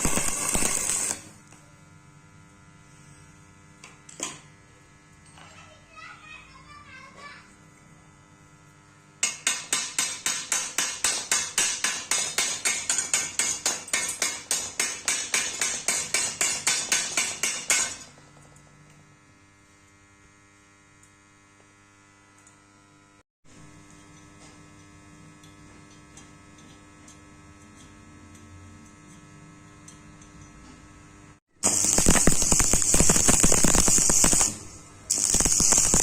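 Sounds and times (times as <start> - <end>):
electrical hum: 31.6 - 36.0
fast sharp hits: 31.6 - 36.0.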